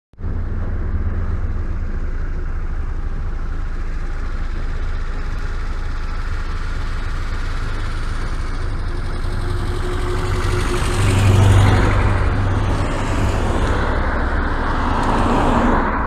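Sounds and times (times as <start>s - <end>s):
car engine running: 0.1s - 16.0s.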